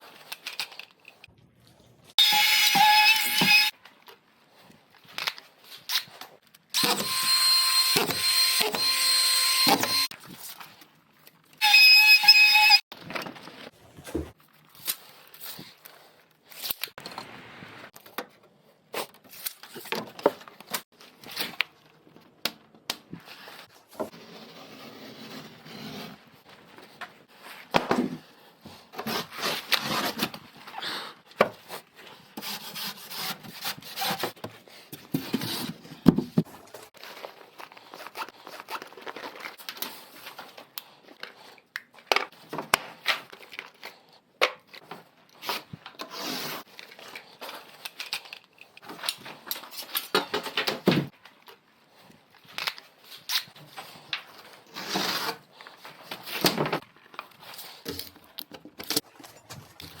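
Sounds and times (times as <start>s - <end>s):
rubbing and scraping: 13.6s - 14.4s, 58.8s - 60.0s.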